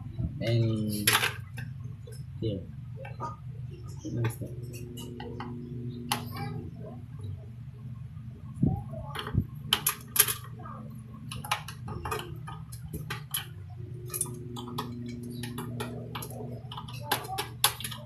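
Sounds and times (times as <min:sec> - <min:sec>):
low hum: 0:00.0 - 0:17.6
computer parts clicking and clattering: 0:01.0 - 0:02.2, 0:09.1 - 0:10.6, 0:11.2 - 0:18.0.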